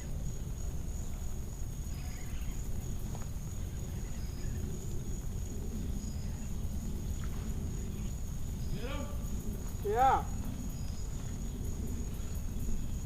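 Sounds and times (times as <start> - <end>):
high insect trill: 0.0 - 13.0
low rumbling noise: 0.0 - 13.0
faint chirps: 1.8 - 3.0.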